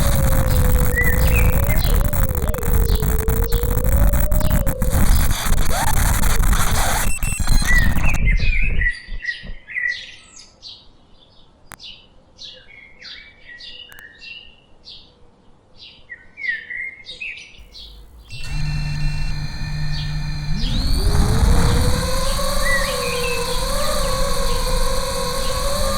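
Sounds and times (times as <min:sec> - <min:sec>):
low hum with high tones: 0:00.0 - 0:09.4, 0:17.6 - 0:25.9.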